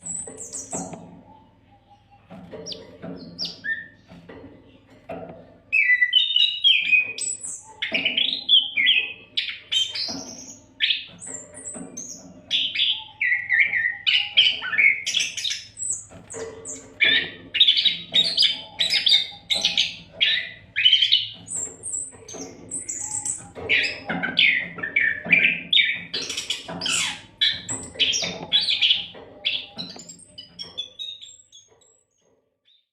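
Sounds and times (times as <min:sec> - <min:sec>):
bird singing whistled song: 0:05.7 - 0:16.0, 0:16.7 - 0:31.7.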